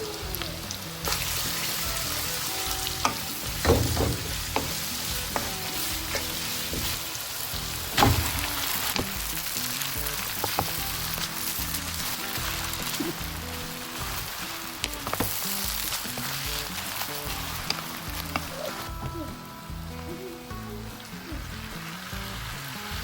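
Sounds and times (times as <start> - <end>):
food sizzling in a pan: 0.0 - 23.0
utensil knocking against a pan: 3.0 - 7.0.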